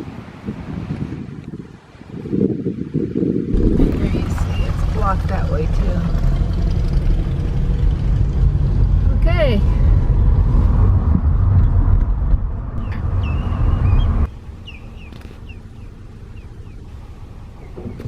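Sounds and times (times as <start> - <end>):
loud low rumble: 3.5 - 17.6
high bird chirps: 12.8 - 16.8.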